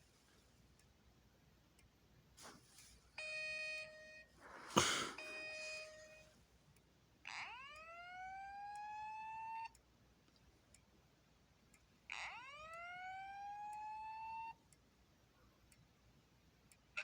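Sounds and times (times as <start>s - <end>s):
fire alarm whoop tone: 5.2s - 6.2s, 7.3s - 9.7s, 12.1s - 14.6s.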